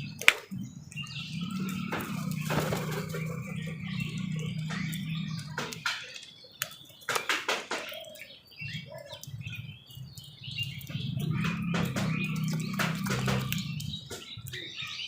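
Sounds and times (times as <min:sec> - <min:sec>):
crows calling: 0:00.0 - 0:15.0.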